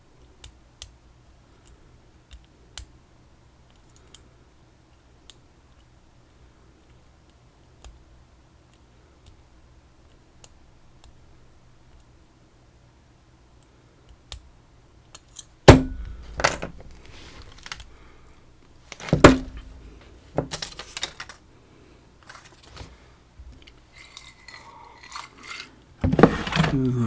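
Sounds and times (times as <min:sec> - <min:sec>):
padlock and lock picks rattling: 0:15.3 - 0:18.0, 0:20.4 - 0:21.4, 0:23.6 - 0:25.8
loud sharp metallic knocks: 0:15.7 - 0:16.8.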